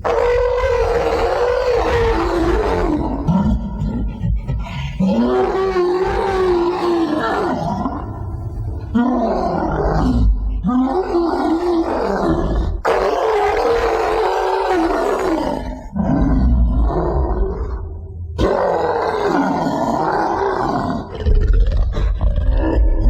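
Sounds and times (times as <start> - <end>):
giant ape growling roars: 0.0 - 4.2, 4.9 - 23.0
ape grunts: 2.8 - 7.9.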